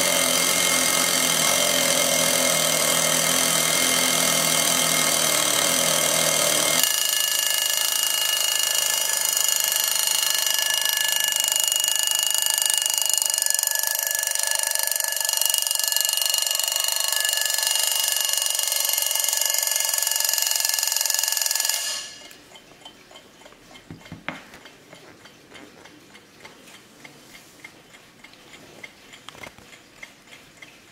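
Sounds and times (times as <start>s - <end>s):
alarm clock ringing: 0.0s - 22.6s
clock ticking quietly: 0.0s - 30.9s.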